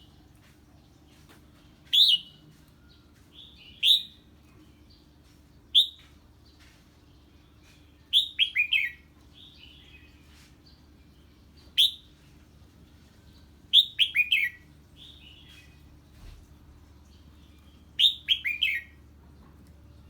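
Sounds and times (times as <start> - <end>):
soft bird chirps: 0.0 - 20.0
bulbul singing: 7.6 - 19.2.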